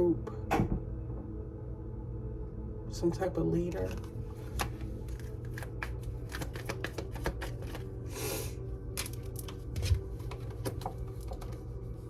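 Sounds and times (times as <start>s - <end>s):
cards shuffling clicks: 3.9s - 7.9s, 9.0s - 11.7s.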